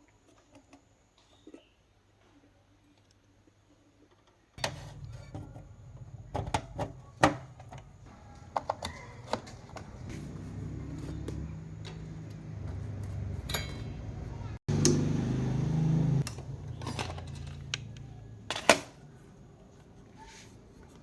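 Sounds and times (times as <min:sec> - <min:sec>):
amplifier low electrical hum: 0:04.6 - 0:18.5.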